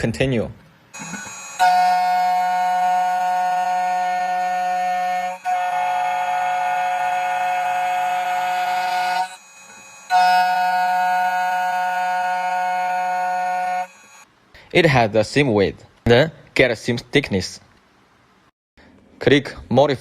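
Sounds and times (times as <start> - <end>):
key cutting machine spindle whine: 1.0 - 14.2.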